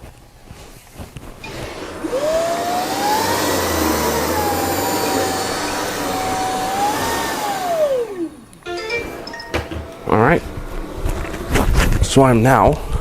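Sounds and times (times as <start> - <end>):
vacuum cleaner motor whine: 0.0 - 13.0.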